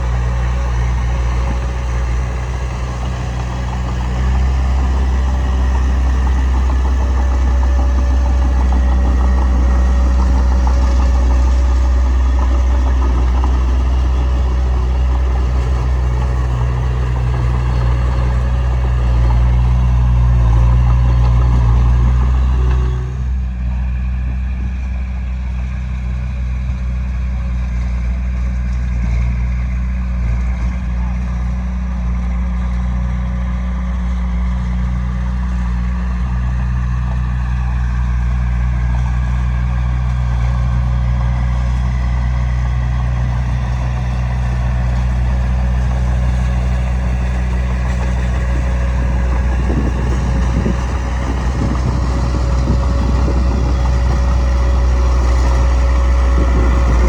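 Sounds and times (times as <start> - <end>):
earthmoving machinery engine drone: 0.0 - 57.0
rough rattle: 43.2 - 57.0.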